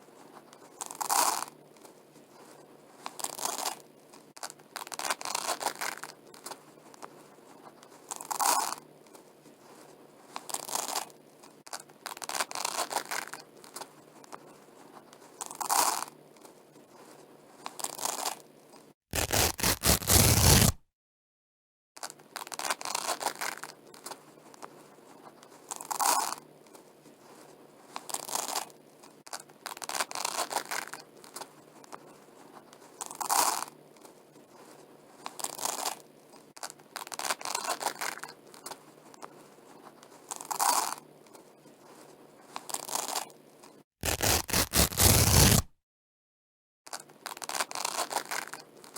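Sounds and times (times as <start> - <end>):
velcro ripping apart: 19.1 - 20.8, 44.0 - 45.7, 47.2 - 48.6.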